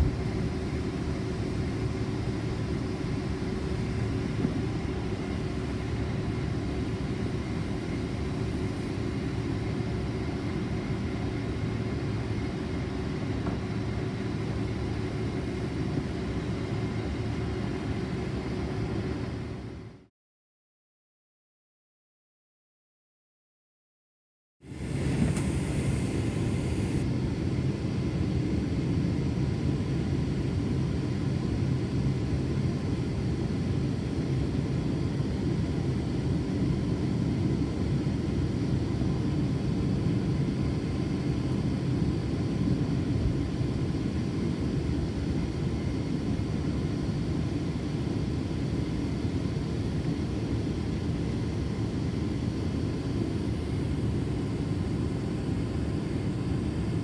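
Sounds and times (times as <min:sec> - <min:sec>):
airliner cabin rumble: 0:00.0 - 0:19.6, 0:24.7 - 0:30.7.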